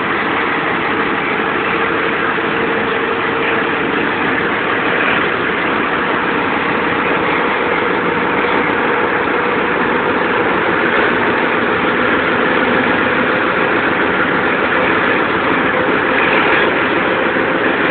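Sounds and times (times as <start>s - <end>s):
diesel locomotive engine running: 0.0s - 17.9s.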